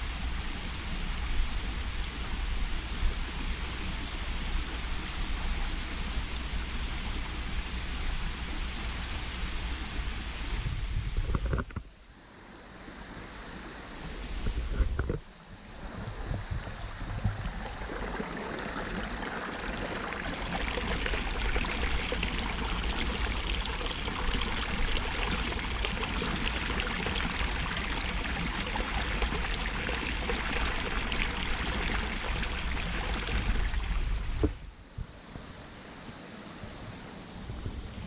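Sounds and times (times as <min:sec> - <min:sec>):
water rushing over rock: 0:13.9 - 0:34.7.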